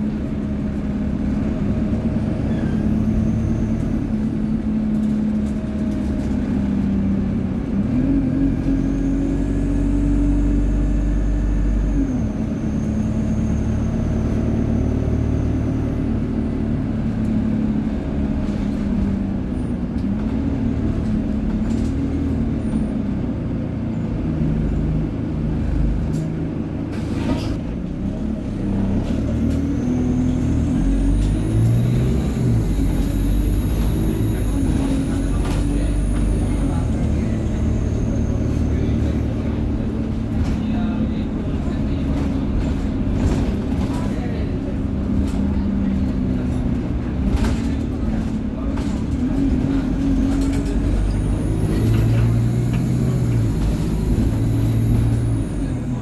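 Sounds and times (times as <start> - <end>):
bus diesel engine under way: 0.0 - 56.0
high turbo whine: 29.6 - 40.3, 49.4 - 56.0.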